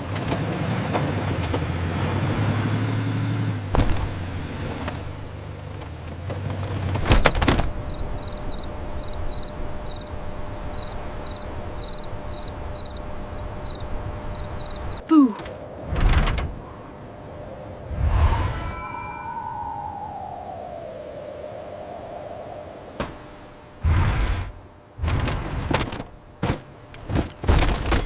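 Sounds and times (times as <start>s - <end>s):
faint steady hum: 7.0s - 15.8s.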